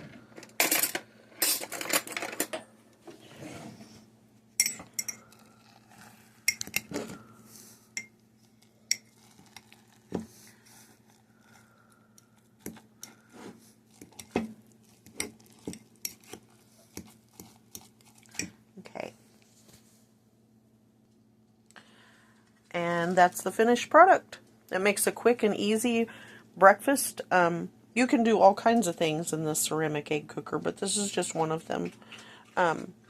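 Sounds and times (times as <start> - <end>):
metal utensil clinking on ceramic: 4.6 - 5.2.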